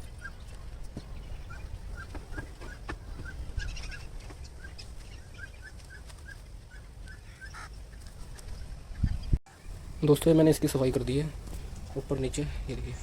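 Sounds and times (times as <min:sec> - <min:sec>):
chickens clucking: 0:00.0 - 0:09.4.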